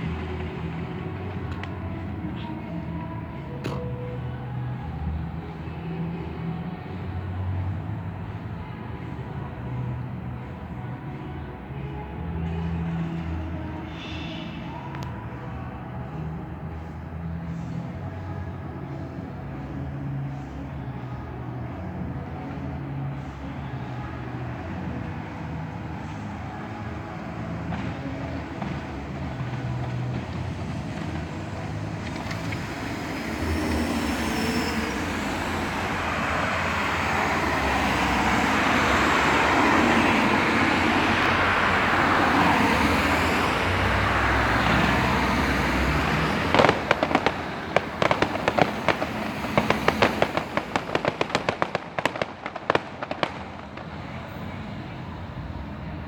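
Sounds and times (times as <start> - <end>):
fireworks rushing: 0.0 - 7.3, 22.5 - 56.0
firework bangs and crackles: 0.0 - 11.5, 22.0 - 56.0
firework whistle: 32.0 - 39.9.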